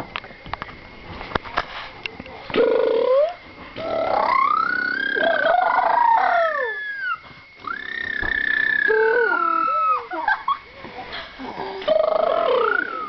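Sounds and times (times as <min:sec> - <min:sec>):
person imitating airplane: 0:02.5 - 0:10.2, 0:11.4 - 0:13.0.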